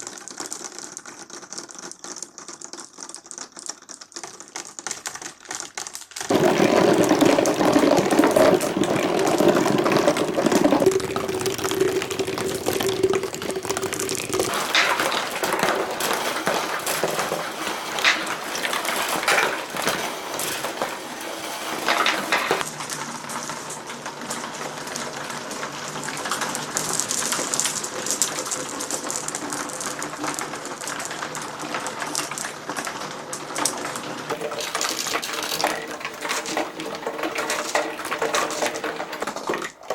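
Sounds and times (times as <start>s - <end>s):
glass marbles clattering: 6.2s - 22.7s, 26.1s - 32.9s, 33.6s - 39.9s.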